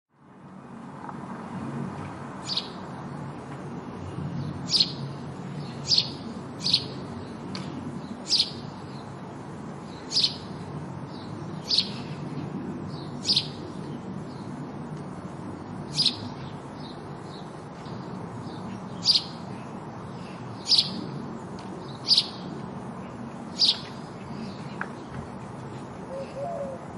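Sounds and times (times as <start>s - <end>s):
sparrow chirping: 2.4s - 2.8s, 4.4s - 9.2s, 9.8s - 12.2s, 12.9s - 14.6s, 15.8s - 21.2s, 21.8s - 22.6s, 23.5s - 24.8s.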